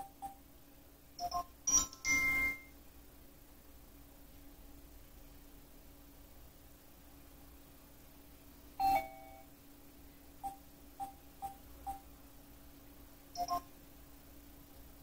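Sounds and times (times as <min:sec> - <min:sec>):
faint steady hum: 0:00.0 - 0:15.0
electronic chime: 0:01.2 - 0:02.7
short beeps: 0:13.4 - 0:13.7.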